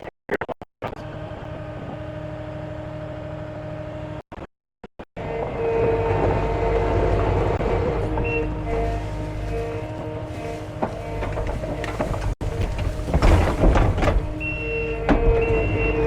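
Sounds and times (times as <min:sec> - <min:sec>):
diesel engine running: 0:05.2 - 0:16.0.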